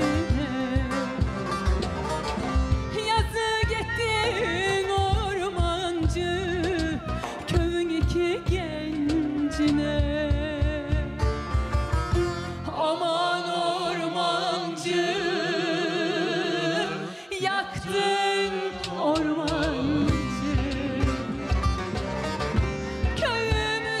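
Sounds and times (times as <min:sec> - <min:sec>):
bass and percussion strokes: 0:00.0 - 0:12.7, 0:19.4 - 0:24.0
folk band playing: 0:00.0 - 0:17.2, 0:17.8 - 0:24.0.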